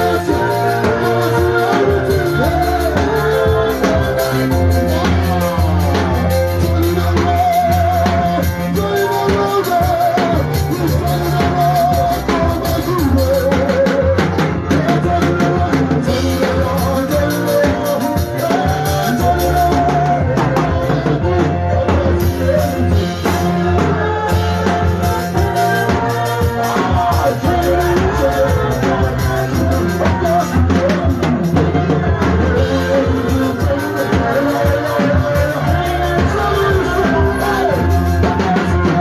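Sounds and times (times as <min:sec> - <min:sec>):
drum kit and bass beat: 0:00.0 - 0:39.0.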